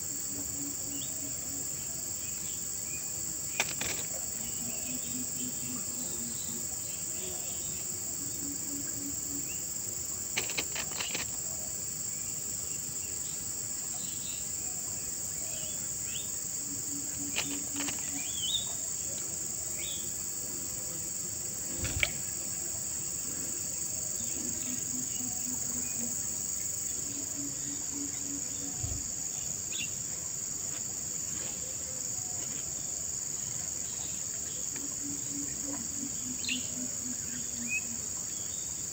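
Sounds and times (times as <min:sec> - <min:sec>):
high-pitched insect chorus: 0:00.0 - 0:38.9
small chirps and clicks: 0:03.5 - 0:04.2, 0:10.3 - 0:11.4, 0:17.2 - 0:18.4.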